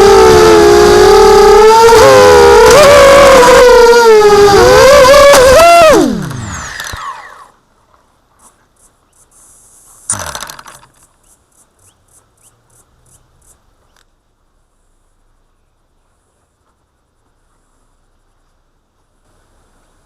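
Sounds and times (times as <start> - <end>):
electric motors winding down: 0.0 - 7.5.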